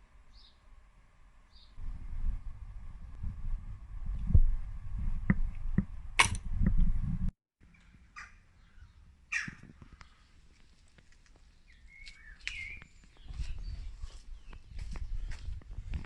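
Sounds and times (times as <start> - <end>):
loud low rumble: 1.8 - 7.3
bird calls and chirps: 7.8 - 10.2, 11.6 - 15.6.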